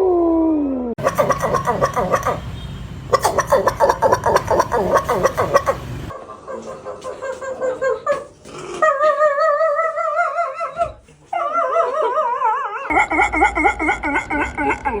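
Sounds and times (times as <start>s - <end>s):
dog howling: 1.0s - 2.5s.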